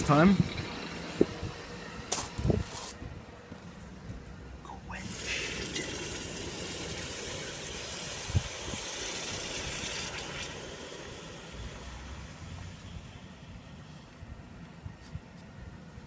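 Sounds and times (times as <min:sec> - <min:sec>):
hot blade hissing in liquid: 0:05.0 - 0:12.9.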